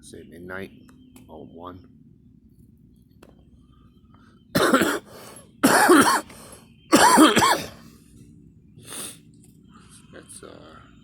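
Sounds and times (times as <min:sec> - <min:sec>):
person coughing: 0:04.6 - 0:06.3, 0:06.9 - 0:07.8.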